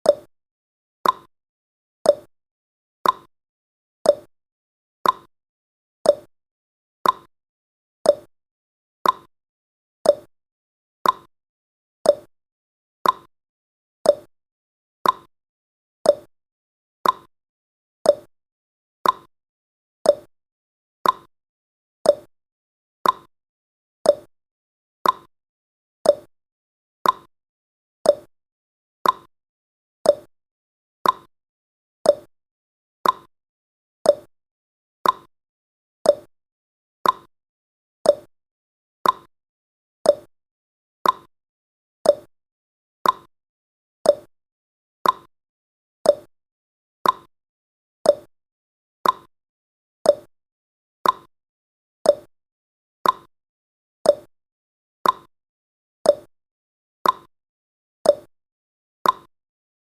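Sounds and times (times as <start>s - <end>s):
clock-like timer ticking: 1.0s - 1.3s, 3.0s - 3.3s, 5.0s - 5.3s, 7.0s - 7.3s, 8.1s - 8.3s, 9.0s - 9.3s, 10.1s - 10.3s, 11.0s - 11.3s, 12.1s - 12.3s, 13.0s - 13.3s, 15.0s - 15.3s, 16.1s - 16.3s, 17.0s - 17.3s, 18.1s - 18.3s, 19.0s - 19.3s, 20.1s - 20.3s, 21.0s - 21.3s, 22.1s - 22.3s, 23.0s - 23.3s, 24.1s - 24.3s, 25.0s - 25.3s, 26.1s - 26.3s, 27.0s - 27.3s, 28.1s - 28.3s, 29.0s - 29.3s, 30.1s - 30.3s, 31.0s - 31.3s, 32.1s - 32.3s, 33.0s - 33.3s, 34.1s - 34.3s, 35.0s - 35.3s, 36.1s - 36.3s, 37.0s - 37.3s, 38.1s - 38.3s, 39.0s - 39.3s, 40.1s - 40.3s, 41.0s - 41.3s, 42.0s - 42.3s, 43.0s - 43.3s, 44.1s - 44.3s, 45.0s - 45.3s, 46.1s - 46.3s, 47.0s - 47.3s, 48.1s - 48.3s, 49.0s - 49.3s, 50.1s - 50.3s, 51.0s - 51.3s, 52.1s - 52.3s, 53.0s - 53.3s, 54.1s - 54.3s, 55.0s - 55.3s, 56.1s - 56.3s, 57.0s - 57.3s, 58.1s - 58.3s, 59.0s - 59.3s.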